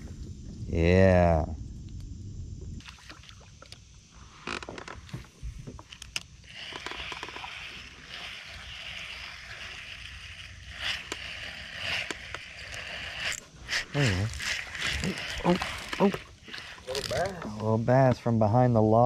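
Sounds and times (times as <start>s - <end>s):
hiss of moving water: 2.8s - 17.1s.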